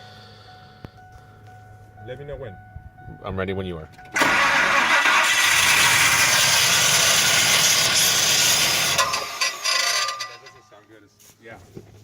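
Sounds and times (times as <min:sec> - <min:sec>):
loud harsh engine starting noise: 0:04.2 - 0:10.0.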